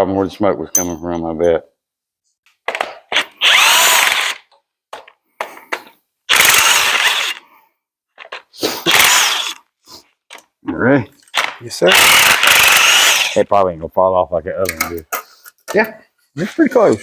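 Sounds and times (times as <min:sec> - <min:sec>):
power tool motor whine: 0:03.2 - 0:04.4, 0:06.3 - 0:07.4, 0:08.9 - 0:09.6, 0:11.9 - 0:13.4.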